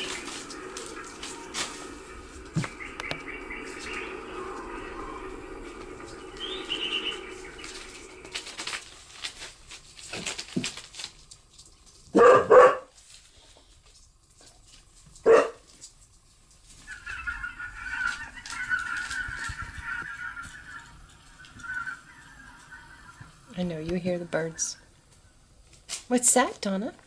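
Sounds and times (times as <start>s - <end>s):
dog barking: 12.1s - 12.9s, 15.2s - 15.6s
goose honking: 16.8s - 24.8s.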